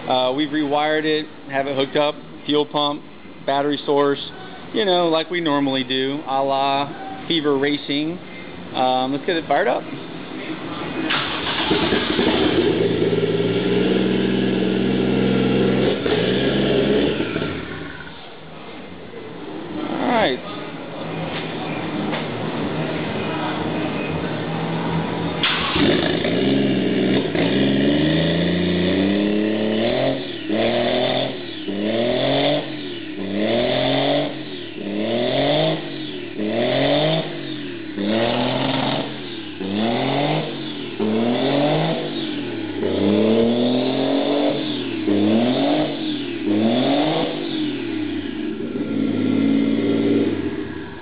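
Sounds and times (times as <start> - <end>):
car engine revving: 9.0 - 18.4, 19.4 - 51.0.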